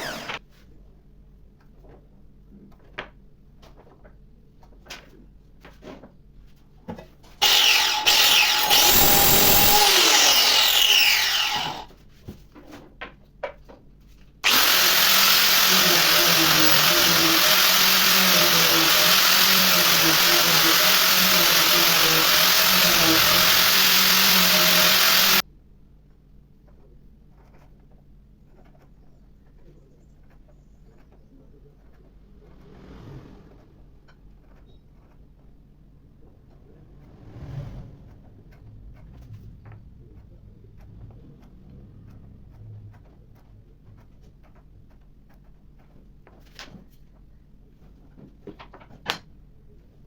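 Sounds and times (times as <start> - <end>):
power tool motor running: 0.0 - 0.4, 7.4 - 11.9, 14.4 - 25.4.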